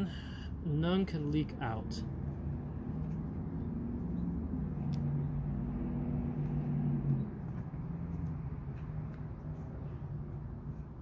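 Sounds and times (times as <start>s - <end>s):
low engine hum: 0.0s - 11.0s.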